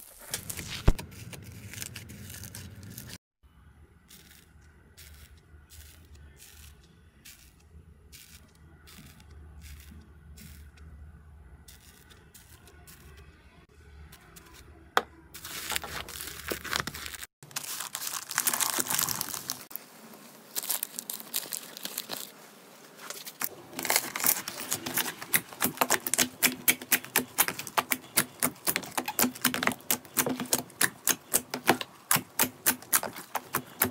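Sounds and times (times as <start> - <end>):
slime crackling: 15.4 - 19.7, 23.7 - 33.9.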